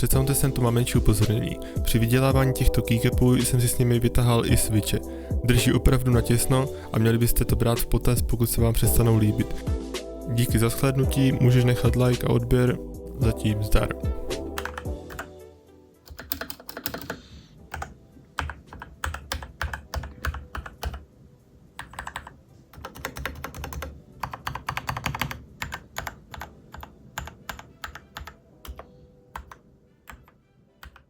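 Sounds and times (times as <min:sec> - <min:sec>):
mechanical keyboard typing: 0:14.6 - 0:15.3, 0:16.0 - 0:21.0, 0:21.8 - 0:31.0.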